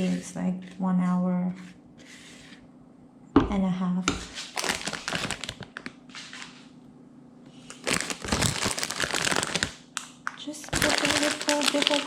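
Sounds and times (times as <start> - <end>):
crinkling handling noise: 4.2 - 6.8, 7.5 - 12.0.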